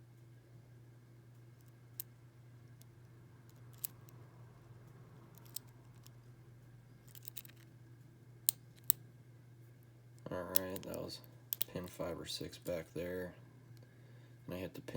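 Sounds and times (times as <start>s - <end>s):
lock pick clicking in padlock: 5.4s - 5.7s.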